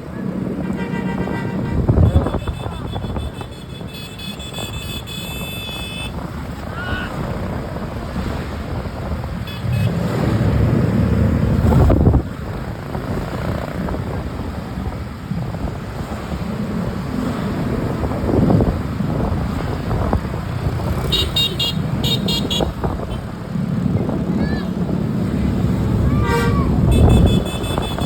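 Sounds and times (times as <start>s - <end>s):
traffic passing: 0.0s - 28.0s
wind buffeting microphone: 0.0s - 28.0s
musical multi-tone bus horn: 0.5s - 6.2s, 9.4s - 10.1s, 21.0s - 23.3s, 26.0s - 28.0s.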